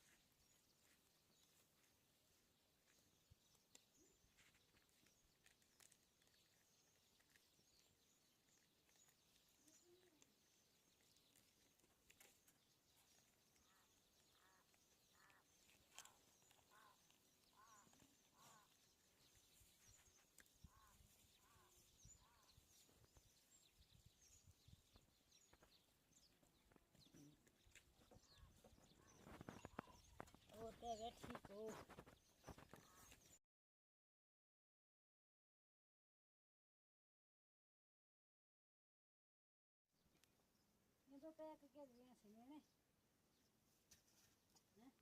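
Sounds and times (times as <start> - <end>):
short repeated bird calls: 13.6 - 18.8, 27.2 - 33.4.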